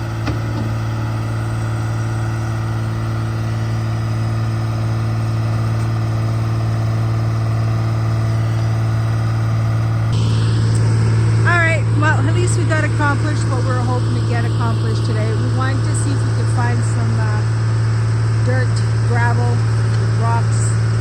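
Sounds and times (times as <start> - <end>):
excavator diesel engine idling: 0.0 - 21.0
higher rushing sound: 10.1 - 13.8.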